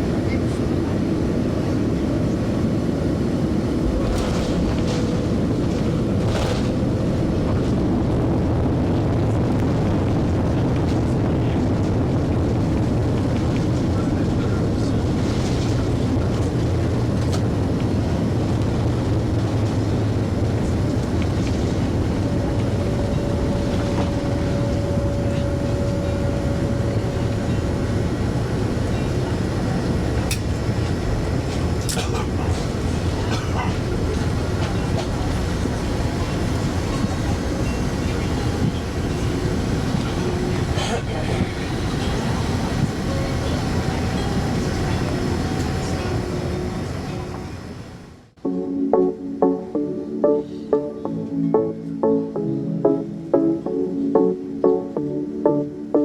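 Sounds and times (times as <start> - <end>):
train rumbling: 0.0 - 48.4
held tone: 21.8 - 29.2.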